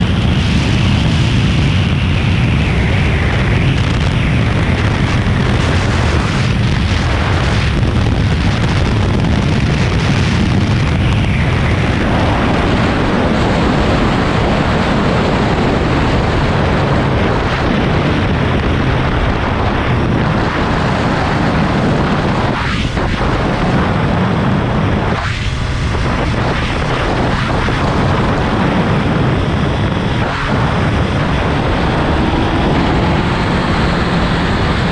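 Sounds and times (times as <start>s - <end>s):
wind buffeting microphone: 0.0s - 34.9s.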